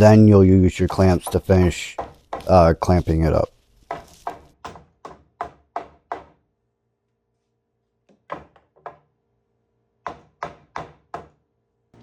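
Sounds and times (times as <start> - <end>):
hammer tapping wood block: 0.8 - 2.7, 3.9 - 6.4, 10.1 - 11.4.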